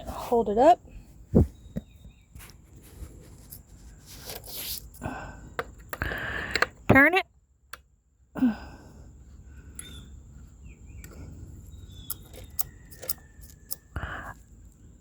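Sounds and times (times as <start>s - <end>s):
clicks and scrapes on chainsaw: 12.0s - 13.9s.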